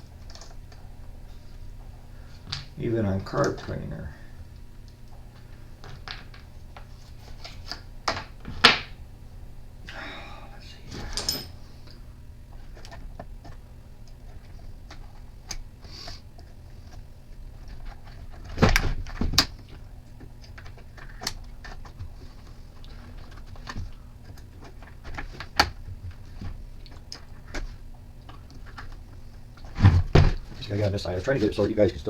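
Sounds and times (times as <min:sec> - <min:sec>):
steady low hum: 0:00.0 - 0:32.0
tools clicking and knocking on workbench: 0:10.9 - 0:11.6.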